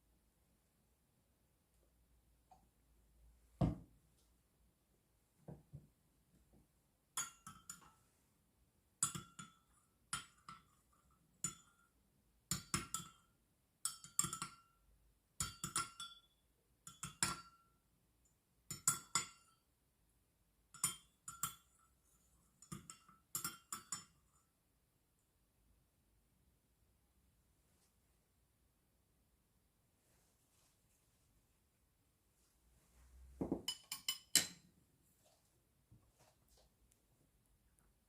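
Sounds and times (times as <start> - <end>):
utensil clinking against glass dish: 22.6 - 24.4, 33.4 - 34.6.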